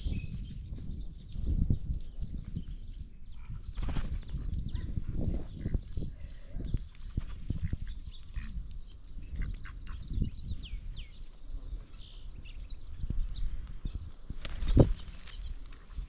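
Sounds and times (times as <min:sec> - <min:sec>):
small birds chirping: 0:00.0 - 0:16.0
wind on microphone: 0:00.0 - 0:16.0
microphone handling noise: 0:14.3 - 0:16.0.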